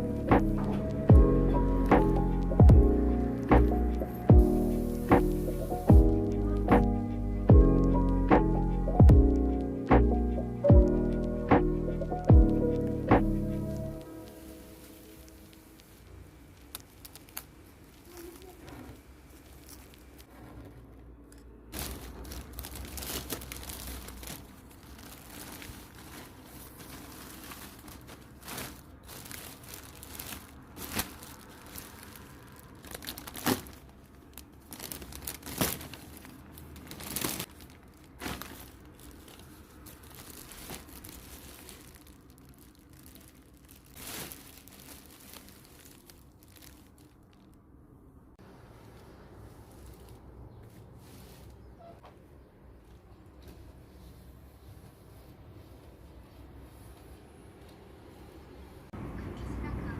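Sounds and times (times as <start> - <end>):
packaging crinkling and tearing: 12.5 - 20.4, 21.7 - 47.7.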